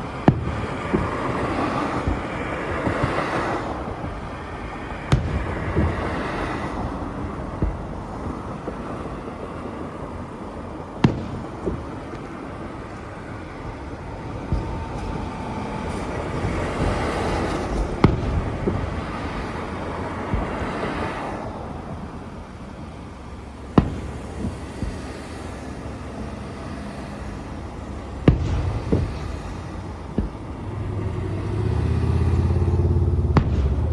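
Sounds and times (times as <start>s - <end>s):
fireworks bangs: 0.0s - 33.9s
low rumbling: 13.4s - 33.9s.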